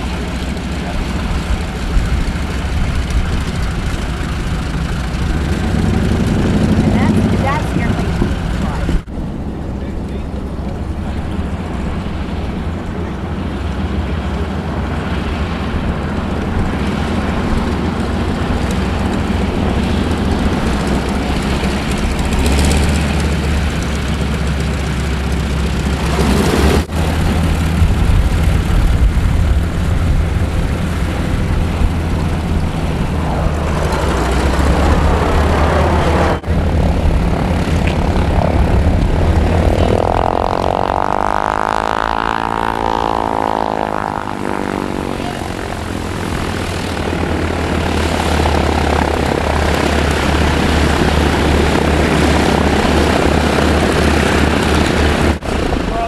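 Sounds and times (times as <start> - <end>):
propeller planes droning: 0.0 - 56.0.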